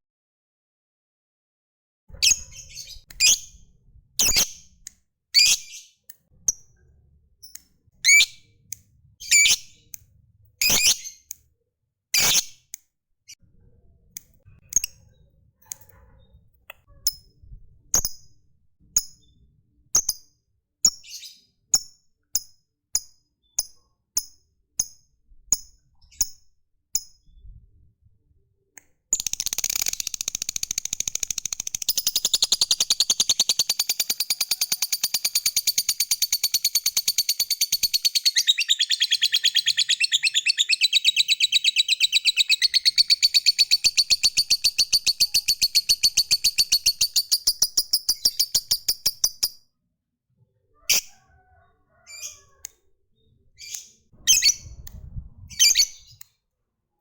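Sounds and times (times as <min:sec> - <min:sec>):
bird chirping: 0:02.1 - 0:03.6, 0:09.2 - 0:10.0, 0:10.6 - 0:11.3, 0:29.2 - 0:49.6, 0:55.5 - 0:56.3
rapid chattering bird trill: 0:29.2 - 0:49.6.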